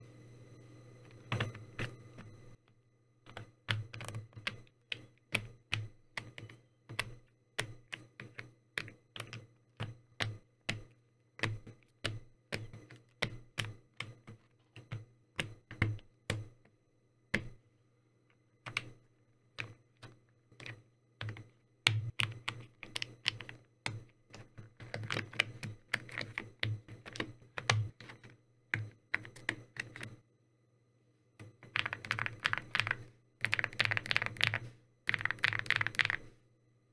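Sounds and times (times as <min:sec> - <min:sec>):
mechanical keyboard typing: 0:03.3 - 0:10.8, 0:11.4 - 0:16.4, 0:18.6 - 0:18.9, 0:19.6 - 0:30.1, 0:31.6 - 0:36.3.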